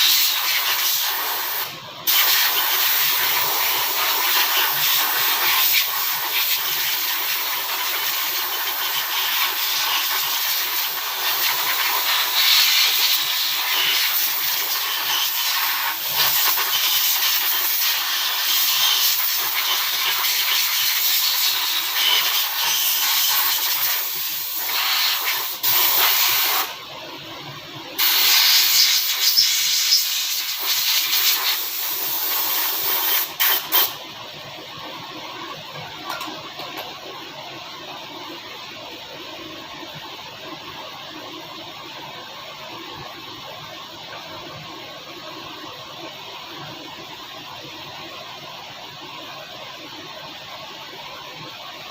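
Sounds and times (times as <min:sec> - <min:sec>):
pressurized hissing spray: 0:00.0 - 0:07.4, 0:08.1 - 0:26.7, 0:28.0 - 0:34.0.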